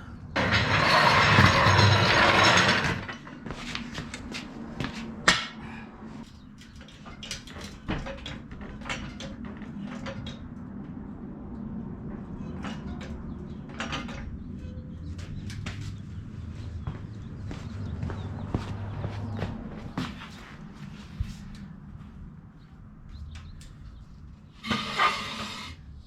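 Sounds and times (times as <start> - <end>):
jack stand scraping: 0.3 - 5.6, 24.6 - 25.8
light metal clanks and knocks: 0.4 - 5.7, 6.4 - 16.0.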